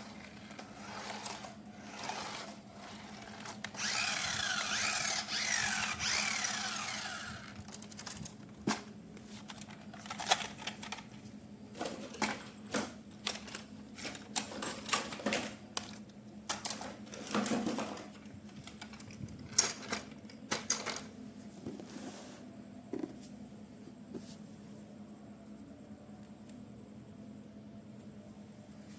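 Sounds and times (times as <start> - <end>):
plastic toys and packaging handled: 0.0 - 21.9.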